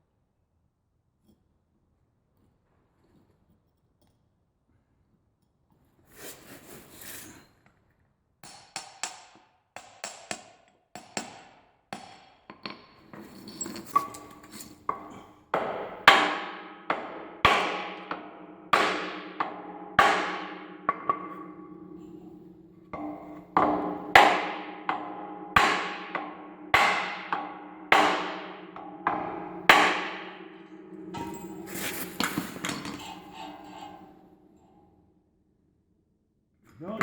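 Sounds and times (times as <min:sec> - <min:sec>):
hammer blows on metal: 0:14.0 - 0:34.0.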